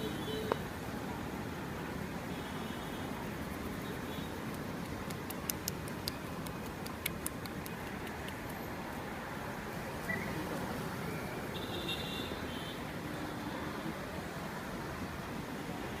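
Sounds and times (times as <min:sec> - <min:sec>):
street traffic noise: 0:00.0 - 0:16.0
sharp clicks: 0:04.5 - 0:08.6.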